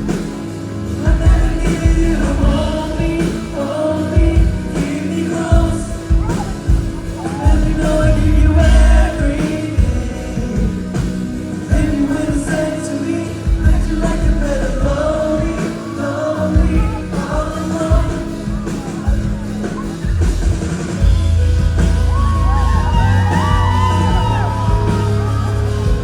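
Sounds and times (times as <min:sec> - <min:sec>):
heavy drum beat: 0:00.0 - 0:26.0
live pop-rock band: 0:00.0 - 0:26.0
man singing: 0:00.8 - 0:20.4.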